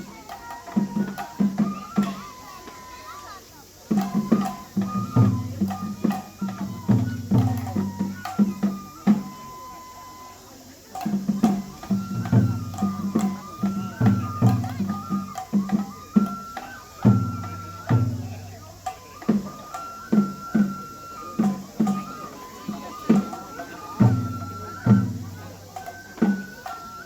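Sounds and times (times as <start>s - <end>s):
taiko drum strokes: 0.0s - 27.0s.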